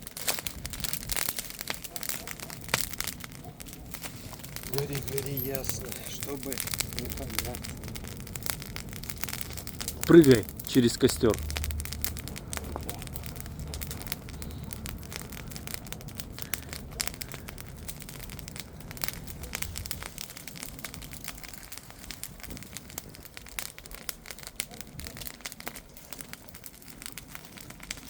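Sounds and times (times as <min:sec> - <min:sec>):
bonfire crackling and popping: 0:00.0 - 0:28.0
low rumble: 0:03.9 - 0:21.1.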